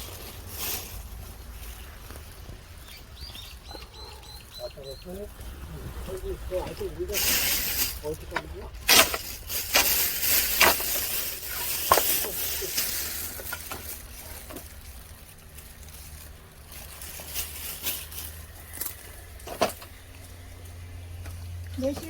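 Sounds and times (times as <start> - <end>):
leaves and branches rustling: 0.0 - 22.0.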